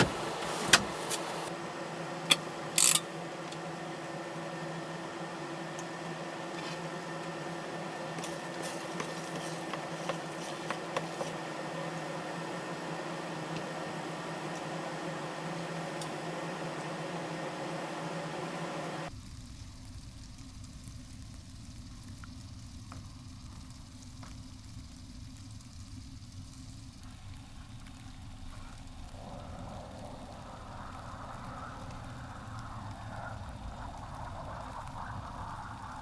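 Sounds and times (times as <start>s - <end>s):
low steady rumble: 19.1s - 36.0s.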